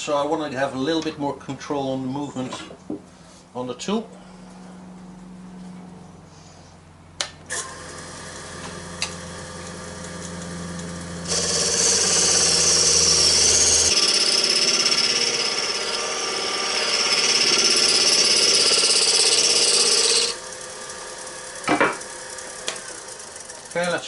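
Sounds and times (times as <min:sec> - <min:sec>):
wood lathe humming: 0:07.5 - 0:24.0
turning tool scraping wood: 0:11.3 - 0:20.5.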